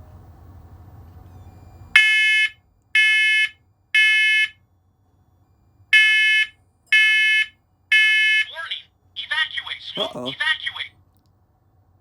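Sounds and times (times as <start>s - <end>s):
smoke alarm beeps: 1.3s - 4.5s, 6.0s - 8.5s.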